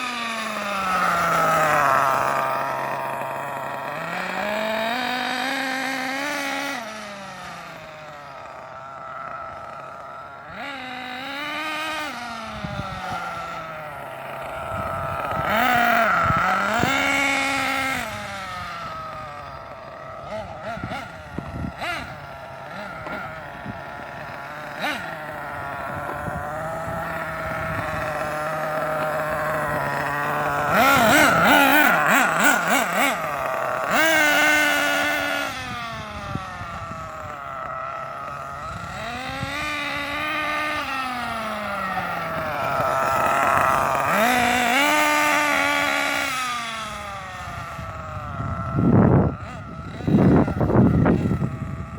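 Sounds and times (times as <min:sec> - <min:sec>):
rc car motor whining: 0:00.0 - 0:51.9.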